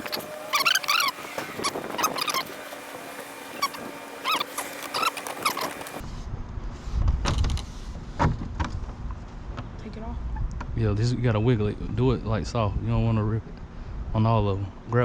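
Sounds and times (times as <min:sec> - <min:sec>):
short chirping calls: 0:00.0 - 0:02.5, 0:03.5 - 0:06.0.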